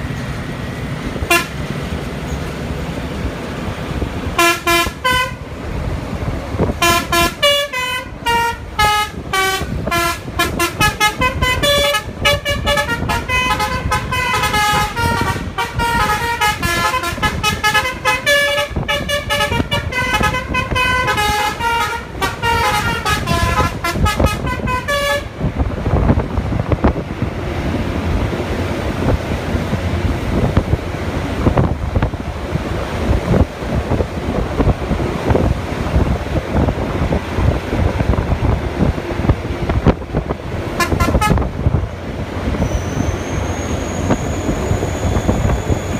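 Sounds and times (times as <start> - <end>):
wind noise: 0.0 - 45.9
bus multi-tone horn melody: 1.2 - 1.8, 4.2 - 5.7, 6.7 - 26.2, 40.7 - 41.9.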